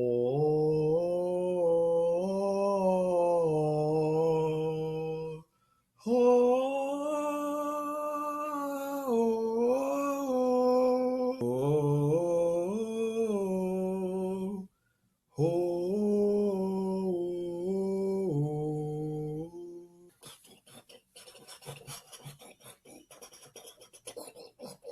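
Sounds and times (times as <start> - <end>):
man droning chant-like tones: 0.0 - 5.4, 6.1 - 14.7, 15.4 - 20.1
scratchy rubbing sounds: 20.1 - 24.9.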